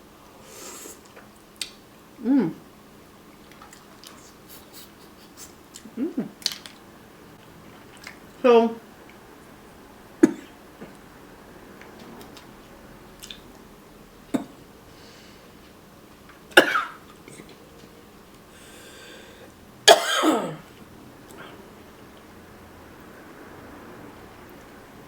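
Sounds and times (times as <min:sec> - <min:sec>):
woman clearing her throat: 0:02.2 - 0:02.6, 0:19.9 - 0:20.7
woman coughing: 0:16.6 - 0:17.0, 0:19.9 - 0:20.7.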